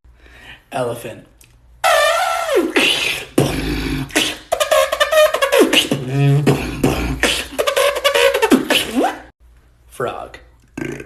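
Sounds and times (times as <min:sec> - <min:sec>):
mouth percussion hits: 0:01.8 - 0:09.3.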